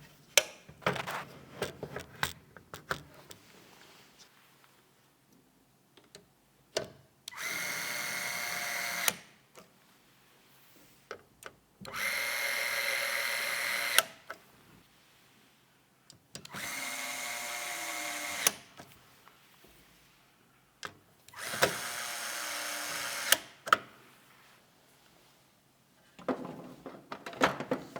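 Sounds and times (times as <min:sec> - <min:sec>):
electric screwdriver whining: 0:07.3 - 0:09.2, 0:11.9 - 0:14.1, 0:16.5 - 0:18.6, 0:21.3 - 0:23.5.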